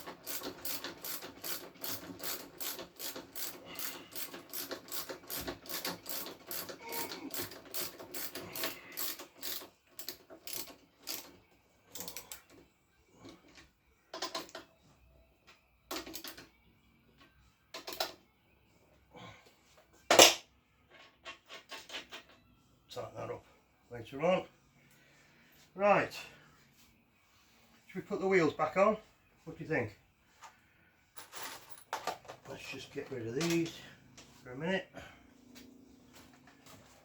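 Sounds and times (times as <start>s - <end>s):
socket ratchet clicking: 0.0s - 11.3s.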